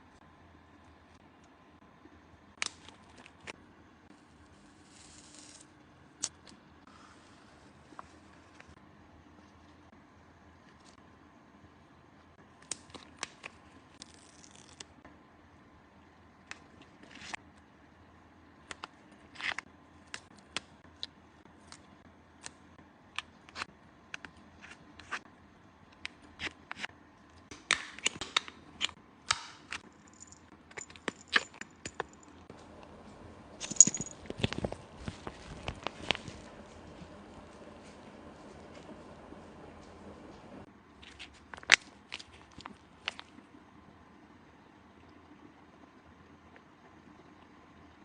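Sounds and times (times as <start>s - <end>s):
faint steady hum: 0.0s - 48.0s.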